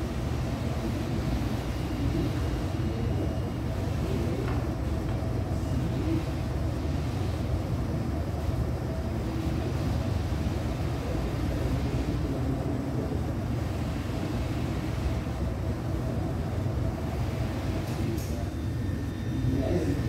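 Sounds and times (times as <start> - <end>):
low mechanical hum and rumble: 0.0 - 20.0.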